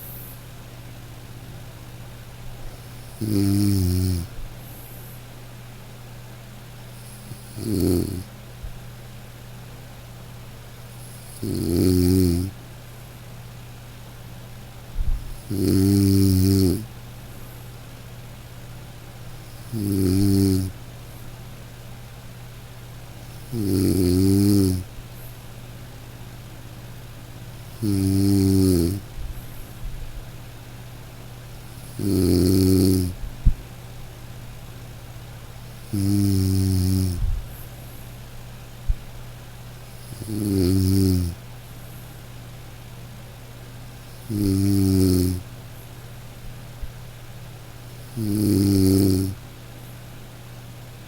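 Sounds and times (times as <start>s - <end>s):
steady low hum: 0.0s - 51.0s
person snoring: 2.8s - 4.3s, 7.0s - 8.3s, 10.9s - 12.6s, 15.3s - 16.9s, 19.5s - 20.8s, 23.3s - 24.9s, 27.7s - 29.0s, 31.6s - 33.2s, 35.8s - 37.2s, 39.9s - 41.4s, 44.1s - 45.4s, 48.0s - 49.4s.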